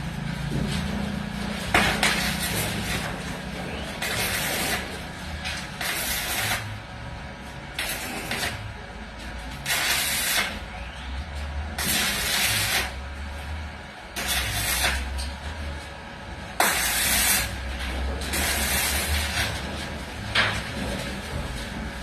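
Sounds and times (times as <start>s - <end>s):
welding arc hissing: 1.1s - 6.8s, 7.7s - 8.7s, 9.6s - 10.7s, 11.7s - 13.0s, 14.1s - 15.2s, 16.6s - 19.6s.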